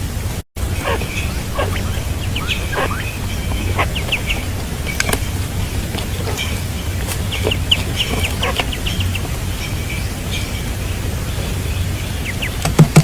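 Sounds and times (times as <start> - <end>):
low rumble: 0.0 - 12.6
birds chirping: 0.6 - 13.0
sharp clicks: 2.7 - 6.1.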